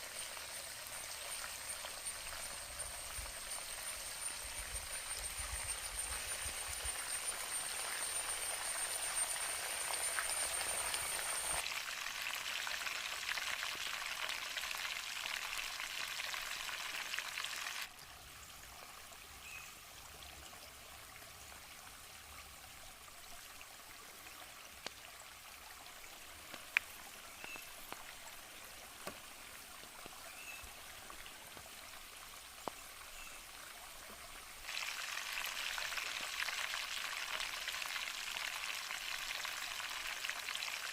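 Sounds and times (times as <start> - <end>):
high insect-like whine: 0.0 - 11.6
chicken frying in hot oil: 0.0 - 17.9, 34.6 - 40.9
faint chirps: 27.3 - 27.8.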